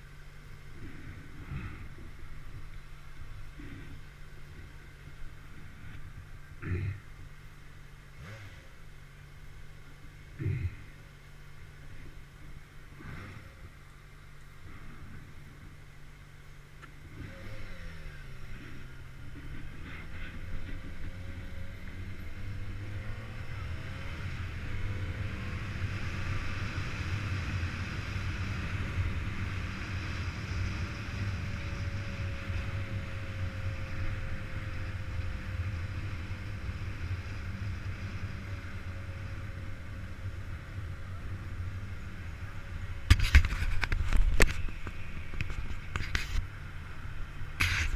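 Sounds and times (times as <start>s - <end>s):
motorcycle engine: 0.0s - 47.9s.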